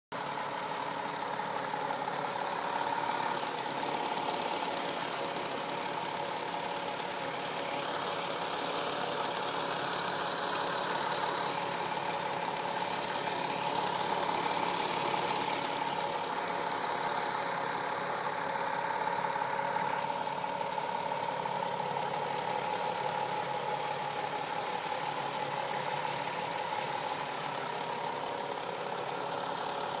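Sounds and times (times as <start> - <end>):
car engine running: 0.1 - 30.0.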